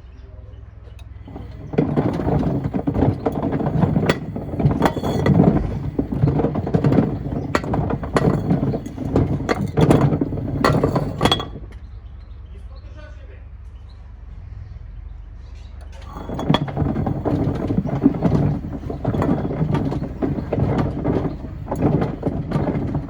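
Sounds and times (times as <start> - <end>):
wood and stones clattering in drum: 1.0 - 11.9, 15.9 - 23.0.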